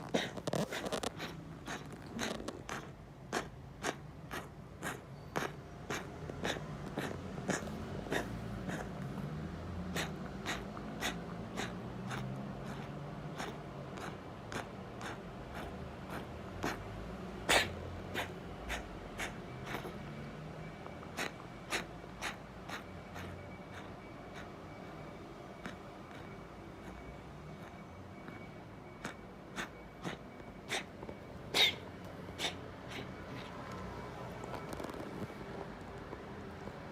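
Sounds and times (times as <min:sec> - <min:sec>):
cat coughing: 0:00.1 - 0:09.0, 0:09.9 - 0:20.0, 0:21.1 - 0:24.5, 0:25.6 - 0:26.2, 0:29.0 - 0:30.9, 0:31.5 - 0:33.5.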